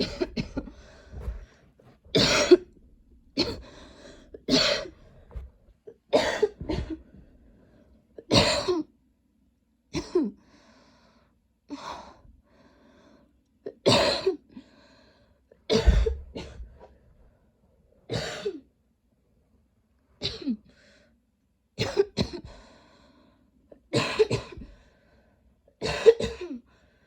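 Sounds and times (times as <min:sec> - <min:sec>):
breaths drawn in: 0:00.0 - 0:05.7
woman coughing: 0:02.1 - 0:02.7, 0:06.2 - 0:07.0, 0:08.3 - 0:08.8, 0:15.7 - 0:16.6, 0:21.8 - 0:22.4, 0:25.8 - 0:26.6.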